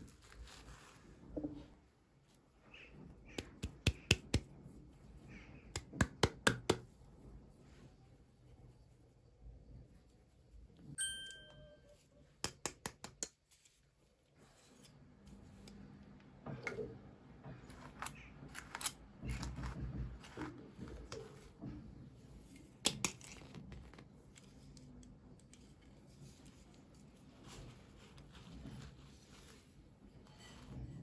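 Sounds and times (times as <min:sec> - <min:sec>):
brief chime: 0:11.0 - 0:12.1
plastic and cardboard rustling: 0:17.5 - 0:24.7.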